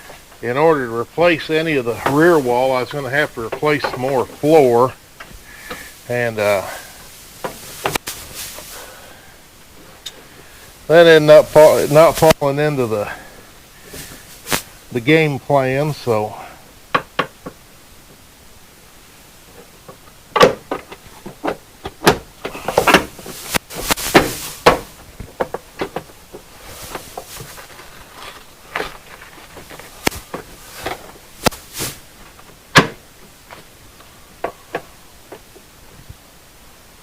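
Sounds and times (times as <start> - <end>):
rustling: 0.0 - 16.7, 19.4 - 36.2
parts knocking and clicking: 16.9 - 17.6.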